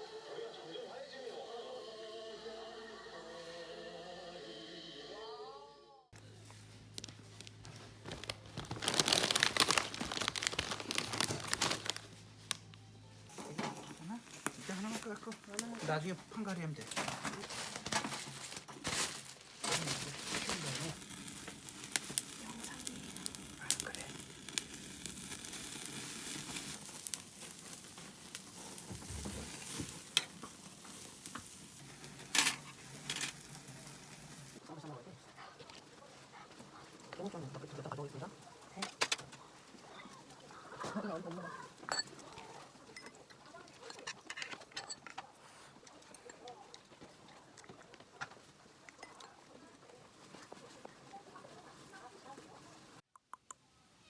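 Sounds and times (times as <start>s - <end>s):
crinkling and rustling: 6.2s - 34.6s
food sizzling in a pan: 20.0s - 34.6s.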